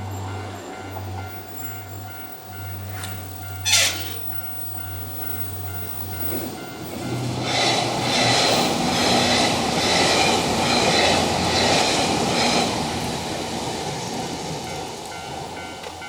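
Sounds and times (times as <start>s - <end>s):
level crossing warning bell: 0.0s - 9.2s, 14.6s - 16.0s
approaching train rush: 0.0s - 16.0s.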